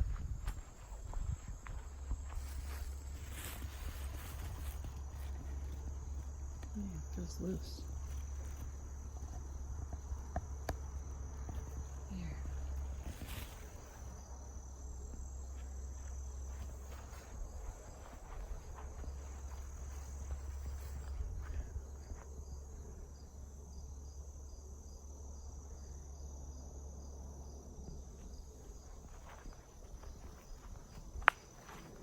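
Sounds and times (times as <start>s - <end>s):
low rumble on microphone: 0.0s - 24.0s
insects trilling: 0.0s - 32.0s.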